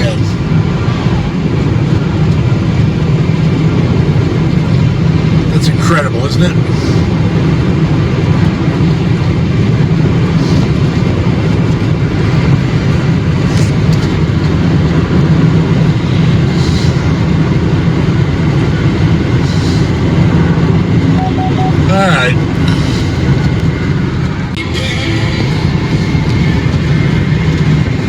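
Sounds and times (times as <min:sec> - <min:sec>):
vehicle engine and tyre noise: 0:00.0 - 0:28.0
strong low hum: 0:19.5 - 0:24.6.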